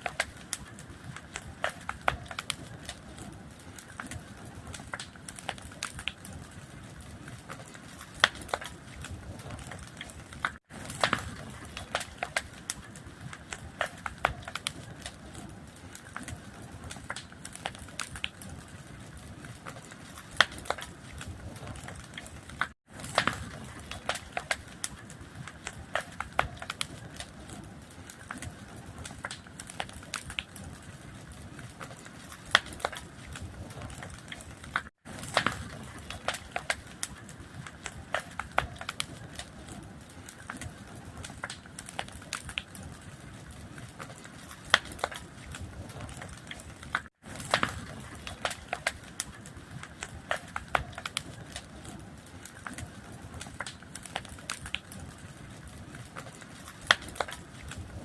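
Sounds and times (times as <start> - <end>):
fire crackling and popping: 0.0 - 58.0.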